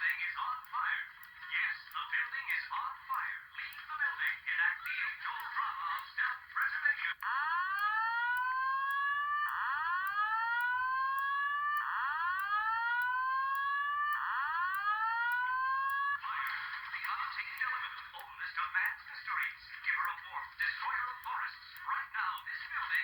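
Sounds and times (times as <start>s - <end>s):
recorded voice message: 0.0s - 7.5s, 16.2s - 23.0s
fire alarm whoop tone: 7.2s - 16.3s.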